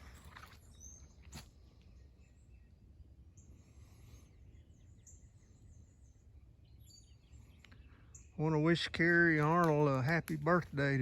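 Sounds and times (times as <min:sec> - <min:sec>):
faint high bird chirps: 0:00.0 - 0:08.4.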